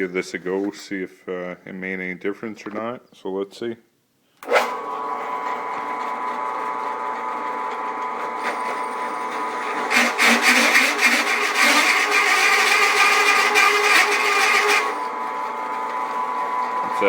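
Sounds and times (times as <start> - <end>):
drill bit cutting workpiece: 4.4 - 17.0
drill press motor hum: 4.4 - 17.0.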